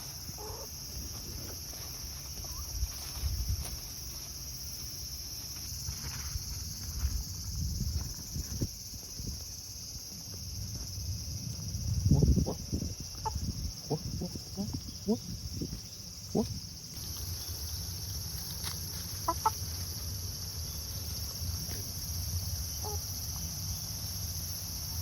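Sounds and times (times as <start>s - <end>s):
insects chorus: 0.0s - 25.0s.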